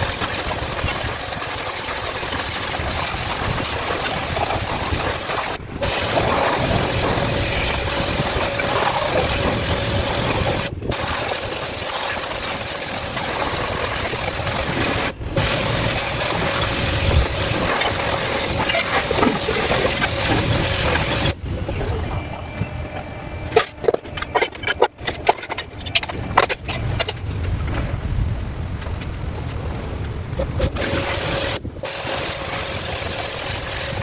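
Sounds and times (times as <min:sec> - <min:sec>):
sharp clicks and knocks: 0:22.3 - 0:34.0.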